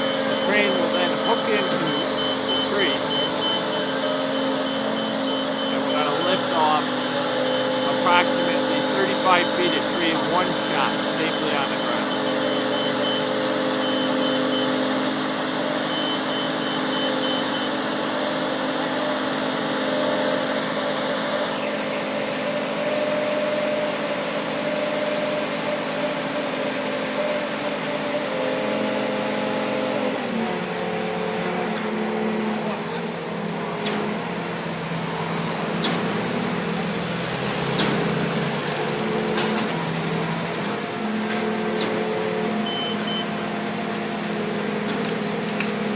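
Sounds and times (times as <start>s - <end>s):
high thin tone: 0.0s - 14.8s
crane engine running: 0.0s - 45.9s.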